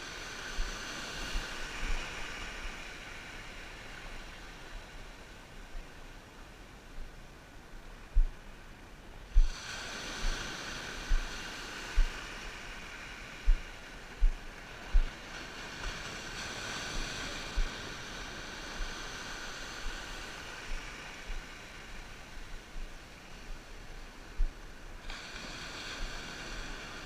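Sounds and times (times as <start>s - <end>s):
sea water rushing: 0.0s - 5.5s, 9.3s - 27.0s
wind: 0.0s - 27.0s.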